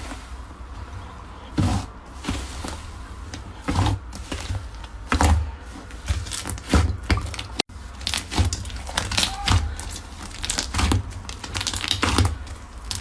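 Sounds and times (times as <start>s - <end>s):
slime squelching by hand: 0.0s - 13.0s.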